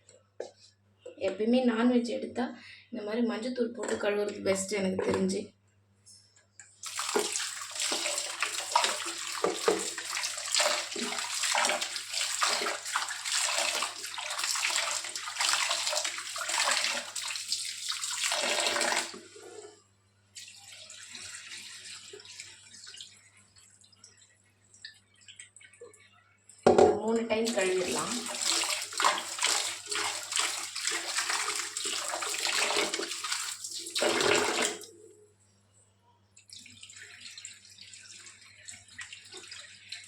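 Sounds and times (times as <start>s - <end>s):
water splashing and sloshing: 6.7s - 19.4s, 20.4s - 26.1s, 27.4s - 34.9s, 36.4s - 40.0s
tap water running: 6.7s - 26.0s, 26.7s - 34.9s, 36.4s - 40.0s.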